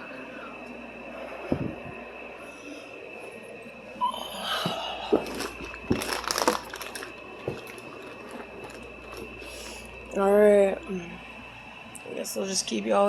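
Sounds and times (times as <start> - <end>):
rustling and handling noise: 5.1 - 9.9.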